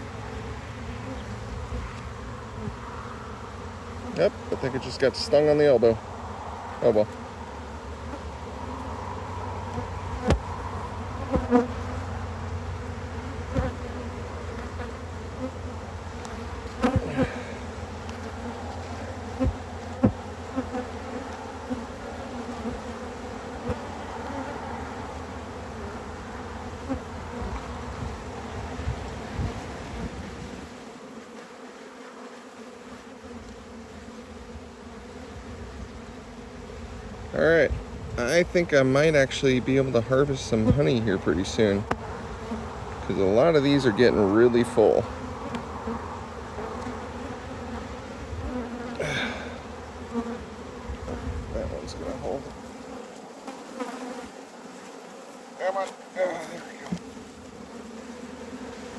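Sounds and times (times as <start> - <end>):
honeybees buzzing: 0.0 - 58.9.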